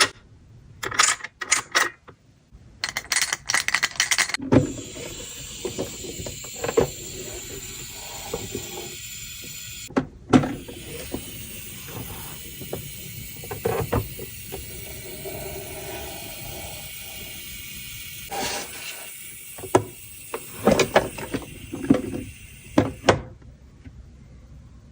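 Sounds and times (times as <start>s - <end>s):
background hiss: 4.7s - 9.9s, 10.6s - 23.1s.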